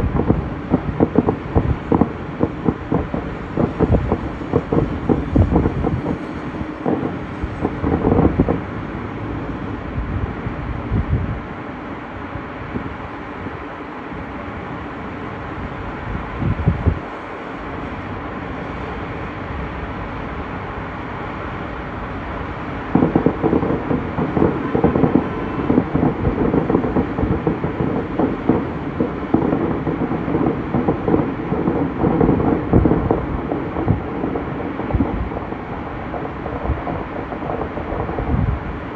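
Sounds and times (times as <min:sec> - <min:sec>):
fireworks popping and crackling: 0:00.0 - 0:08.7, 0:22.9 - 0:38.9
steady rushing noise: 0:00.0 - 0:38.9.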